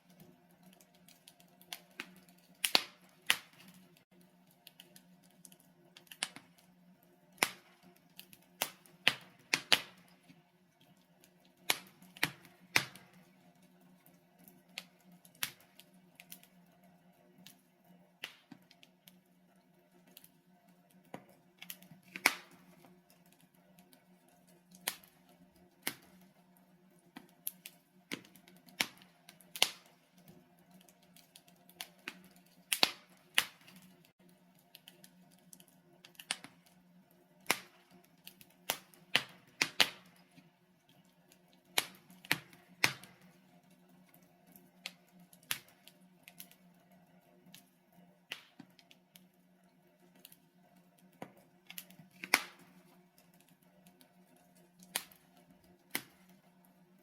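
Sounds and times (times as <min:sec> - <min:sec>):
fire crackling and popping: 0:00.0 - 0:57.0.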